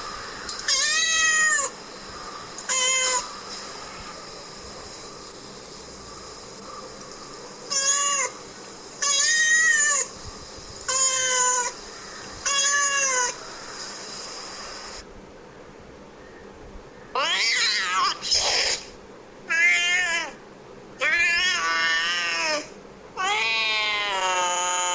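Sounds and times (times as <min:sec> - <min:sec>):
cat meowing: 0:00.7 - 0:01.7, 0:07.7 - 0:08.4, 0:09.0 - 0:10.1, 0:12.4 - 0:13.4, 0:19.5 - 0:20.4, 0:21.0 - 0:24.9.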